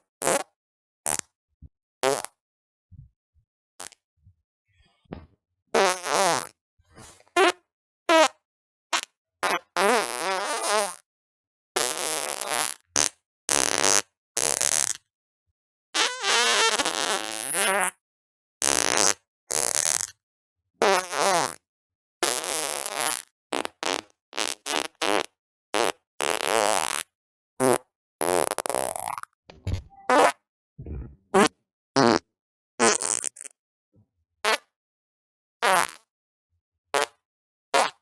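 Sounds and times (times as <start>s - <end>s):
fart sounds: 1.1s - 1.3s, 2.0s - 2.4s, 5.8s - 6.5s, 11.8s - 15.0s, 18.6s - 20.1s, 27.6s - 32.2s, 32.8s - 33.6s, 35.6s - 36.1s, 37.0s - 37.2s.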